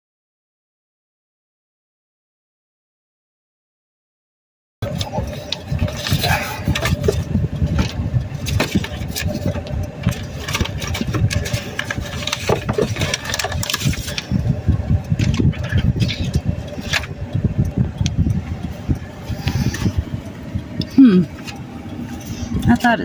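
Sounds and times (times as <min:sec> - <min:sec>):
car engine idling: 0:04.8 - 0:23.0
clicks and rustles inside car: 0:04.8 - 0:23.0
traffic: 0:04.8 - 0:23.0.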